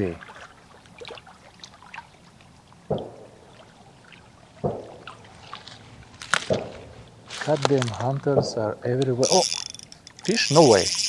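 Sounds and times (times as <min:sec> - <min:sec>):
light water sounds: 0:00.0 - 0:11.0
distant gunshots: 0:02.9 - 0:03.4, 0:04.6 - 0:05.1
faint small ticks: 0:09.0 - 0:11.0.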